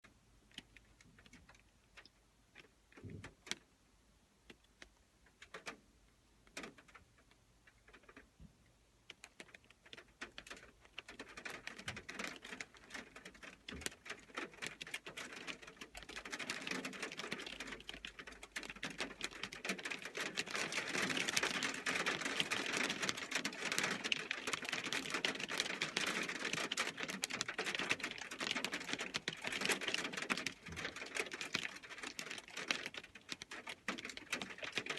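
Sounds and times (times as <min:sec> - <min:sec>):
hail and rain on metal roof: 0:09.3 - 0:34.9.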